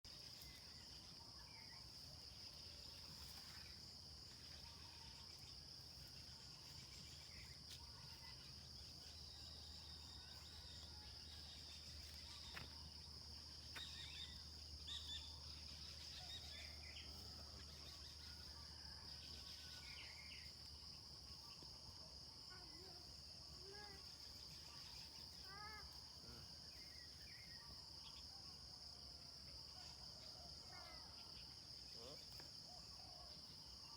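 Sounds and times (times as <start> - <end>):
bird chirps: 6.3 - 20.6.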